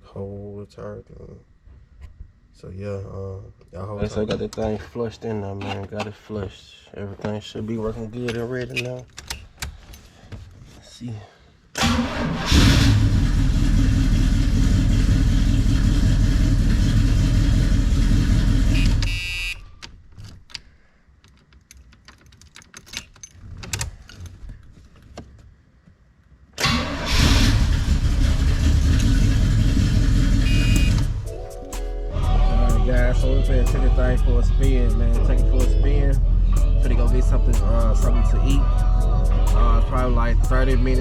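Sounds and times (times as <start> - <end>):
car engine starting and running: 11.8 - 19.1, 26.6 - 32.0.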